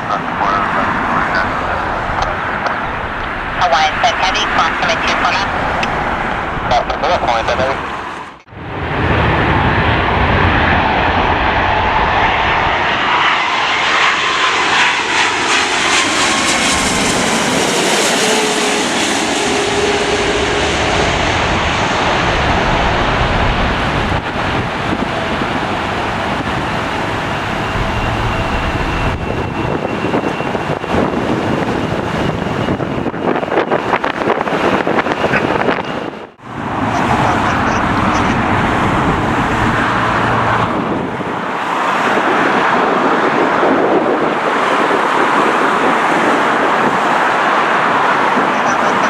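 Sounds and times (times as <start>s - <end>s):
airliner jet engines passing: 0.0s - 49.0s.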